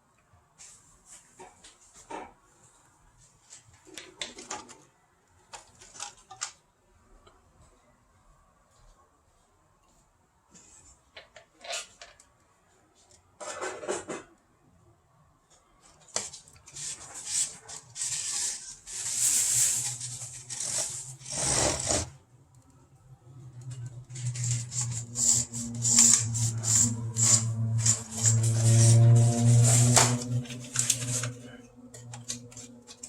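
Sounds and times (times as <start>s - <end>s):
plastic parts clicking and knocking: 5.5s - 6.6s.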